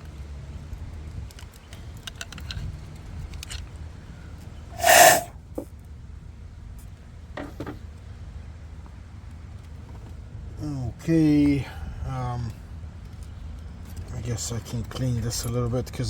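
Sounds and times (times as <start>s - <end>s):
clicks and taps of engine parts: 0.0s - 3.8s, 6.8s - 8.1s, 8.8s - 10.3s, 12.5s - 16.0s
short loud burst of noise: 4.8s - 5.3s.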